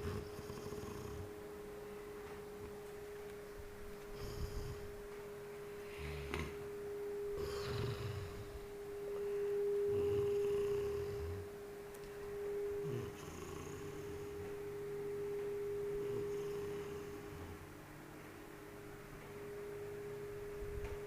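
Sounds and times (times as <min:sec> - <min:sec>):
steady hum: 0:00.0 - 0:21.0
person snoring: 0:04.2 - 0:04.9, 0:05.8 - 0:06.6, 0:07.4 - 0:08.6, 0:09.9 - 0:11.5, 0:12.8 - 0:14.4, 0:16.0 - 0:17.6.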